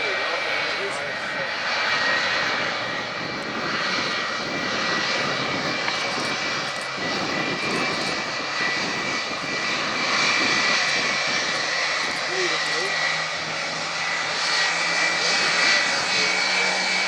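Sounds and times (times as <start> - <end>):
jet engines whining: 0.0 - 17.0.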